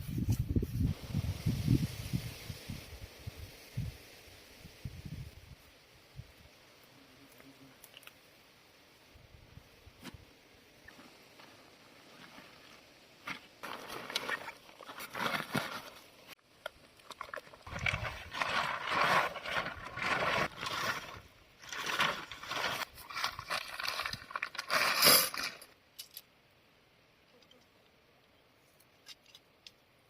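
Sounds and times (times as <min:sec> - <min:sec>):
scraping and rustling: 0:17.1 - 0:25.7.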